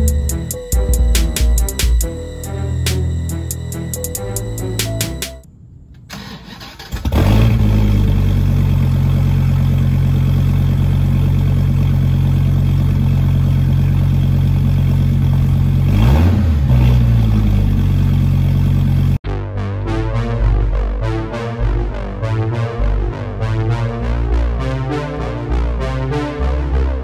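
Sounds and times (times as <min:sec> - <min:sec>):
car engine idling: 0:00.0 - 0:05.3, 0:07.6 - 0:19.2
engine revving: 0:00.0 - 0:05.4, 0:06.7 - 0:19.2.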